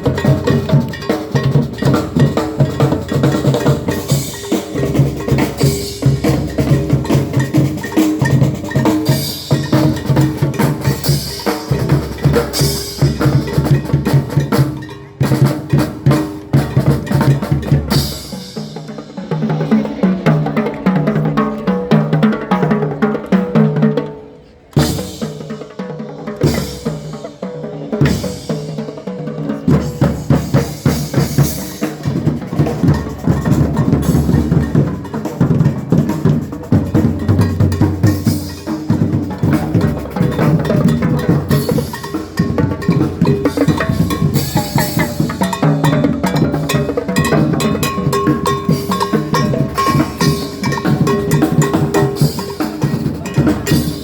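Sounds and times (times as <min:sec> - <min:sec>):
fast dense drumming: 0:00.0 - 0:23.0, 0:28.0 - 0:54.0
backing music: 0:28.0 - 0:54.0.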